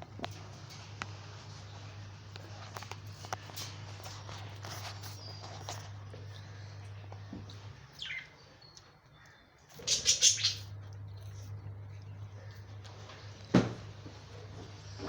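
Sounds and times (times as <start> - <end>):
budgerigars chirping: 7.9 - 8.5, 9.8 - 10.7.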